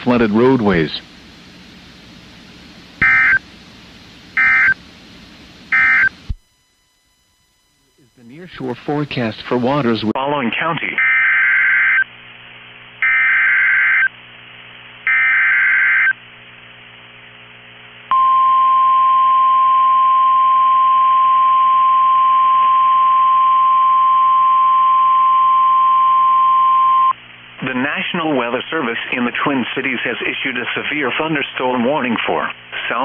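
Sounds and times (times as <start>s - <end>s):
steady single-pitch alarm tone: 3.0s - 3.4s, 4.4s - 4.8s, 5.7s - 8.3s, 13.0s - 14.1s, 15.1s - 16.2s.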